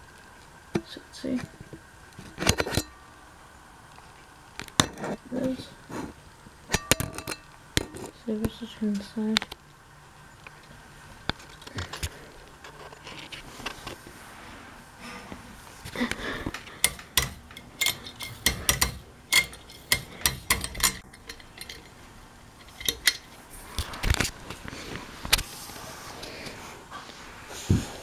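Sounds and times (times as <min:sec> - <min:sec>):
ceiling fan parts clicking and clinking: 0:00.0 - 0:03.1, 0:06.6 - 0:09.7, 0:15.2 - 0:25.5.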